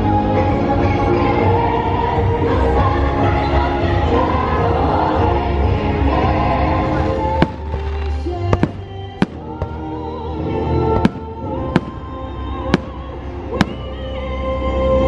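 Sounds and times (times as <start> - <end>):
music over loudspeakers: 0.0 - 15.0
fireworks bursting with sharp bangs: 6.9 - 14.4.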